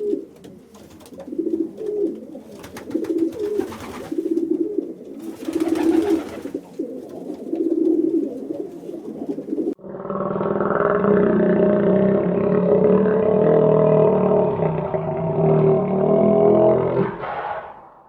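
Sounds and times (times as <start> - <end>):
pigeon cooing: 0.0 - 9.8.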